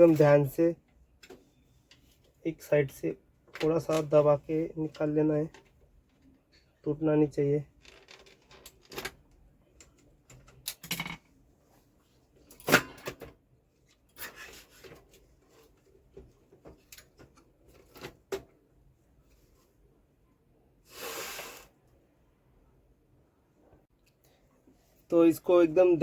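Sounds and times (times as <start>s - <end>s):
plastic parts clicking and knocking: 7.7s - 11.3s.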